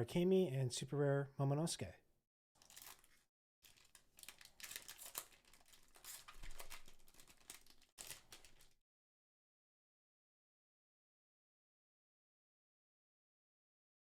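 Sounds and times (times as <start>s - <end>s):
foil wrapper crinkling and tearing: 2.6s - 8.8s.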